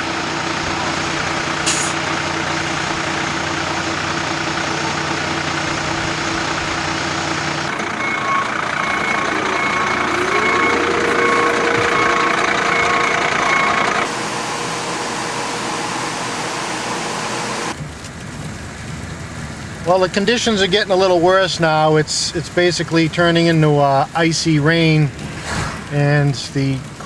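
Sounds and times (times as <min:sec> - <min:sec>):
heavy truck engine running: 0:00.0 - 0:20.6
reversing beeper: 0:06.0 - 0:17.7.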